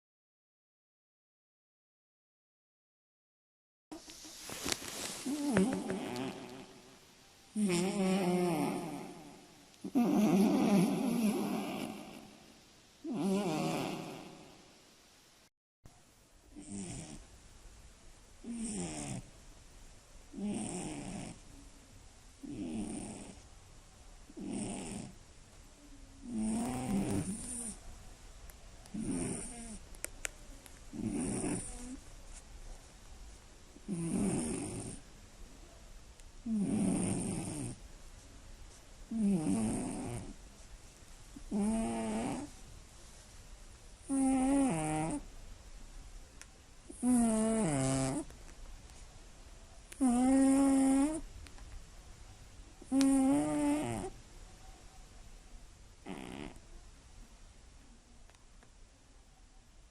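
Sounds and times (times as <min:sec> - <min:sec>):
cat snoring: 0:05.2 - 0:14.7, 0:16.5 - 0:17.2, 0:18.4 - 0:19.3, 0:20.3 - 0:21.4, 0:22.4 - 0:23.4, 0:24.3 - 0:25.2, 0:26.2 - 0:27.8, 0:28.9 - 0:29.8, 0:30.9 - 0:32.0, 0:33.8 - 0:35.0, 0:36.4 - 0:37.8, 0:39.1 - 0:40.4, 0:41.4 - 0:42.6, 0:44.0 - 0:45.3, 0:46.9 - 0:48.3, 0:50.0 - 0:51.2, 0:52.8 - 0:54.2, 0:56.0 - 0:56.6.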